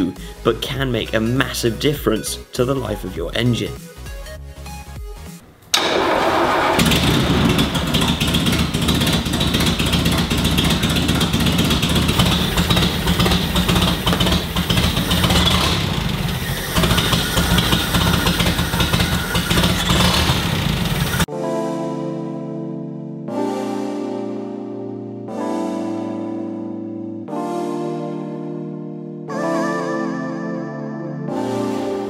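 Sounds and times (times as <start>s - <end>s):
petrol engine running: 5.4s - 21.3s.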